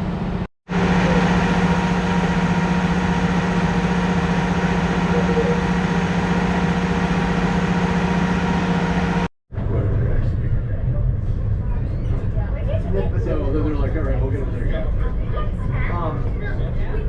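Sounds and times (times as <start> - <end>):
vehicle engine droning: 0.0 - 11.8.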